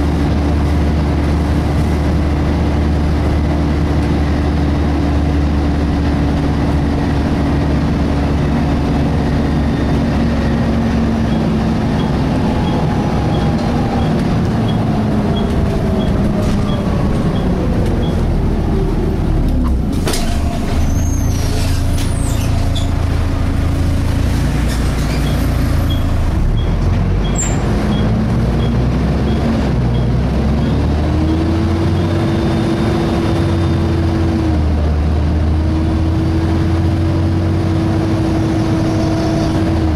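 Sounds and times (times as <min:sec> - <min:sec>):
bus diesel engine: 0:00.0 - 0:39.9
brief high squeal: 0:20.1 - 0:23.0, 0:24.7 - 0:26.2.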